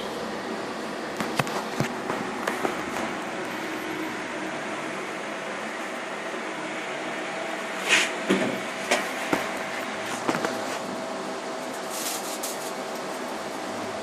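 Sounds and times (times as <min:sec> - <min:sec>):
foam cutter machine humming: 0:00.0 - 0:14.0.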